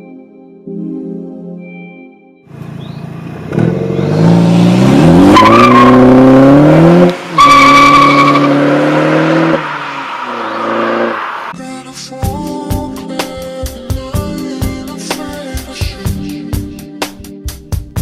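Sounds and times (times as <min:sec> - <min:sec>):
car engine accelerating: 0:02.5 - 0:11.6.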